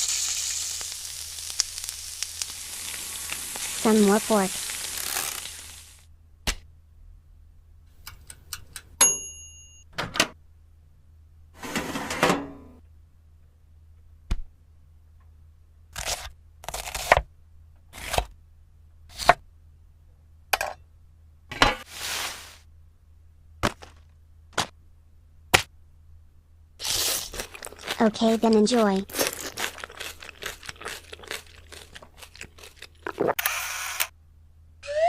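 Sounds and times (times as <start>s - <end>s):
scraping or hissing bursts: 21.8s - 22.7s
sharp cracks and knocks: 25.5s - 25.7s.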